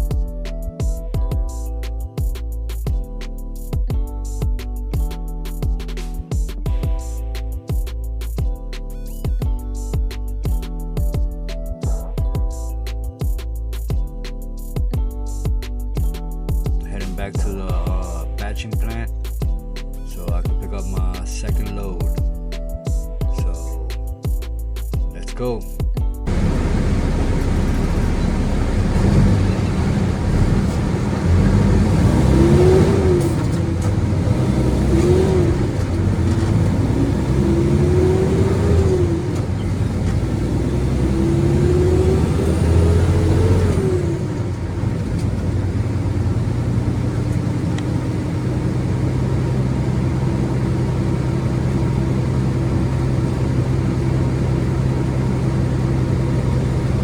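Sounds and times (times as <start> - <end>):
diesel truck engine pulling away: 26.3 - 57.0.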